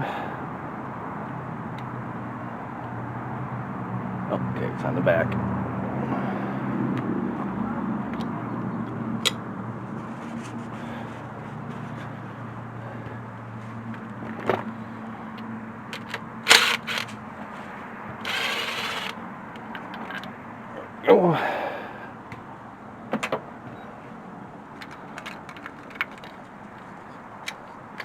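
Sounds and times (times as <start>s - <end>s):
metallic clicks of tools: 16.0s - 17.1s
metal scrape: 16.0s - 17.2s, 18.2s - 19.2s.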